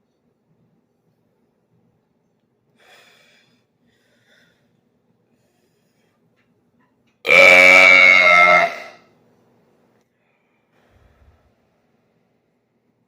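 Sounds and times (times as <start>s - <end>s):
faint short breath: 2.8s - 6.3s, 10.1s - 12.4s.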